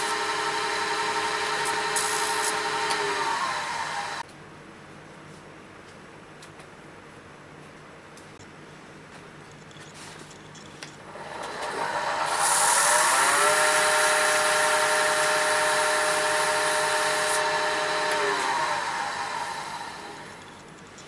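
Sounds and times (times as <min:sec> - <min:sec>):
wood lathe motor whine: 0:00.0 - 0:04.2, 0:11.1 - 0:20.5
sandpaper hiss on spinning wood: 0:01.5 - 0:04.2, 0:12.2 - 0:20.2.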